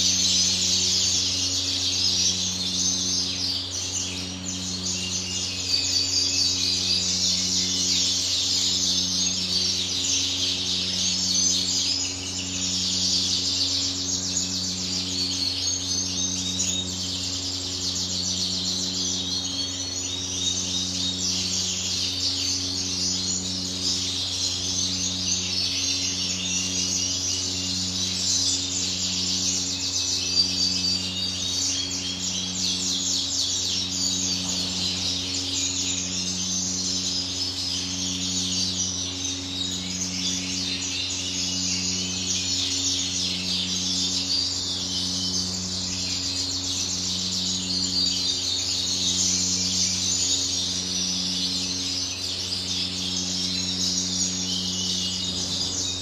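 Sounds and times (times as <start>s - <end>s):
canaries chirping: 0.0s - 56.0s
low mechanical hum: 0.0s - 56.0s.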